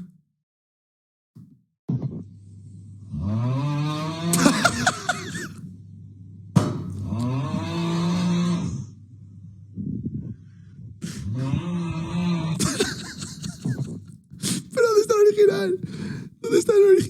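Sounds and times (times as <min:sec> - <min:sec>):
man snoring: 0:03.1 - 0:05.6, 0:06.9 - 0:08.9, 0:11.0 - 0:14.7.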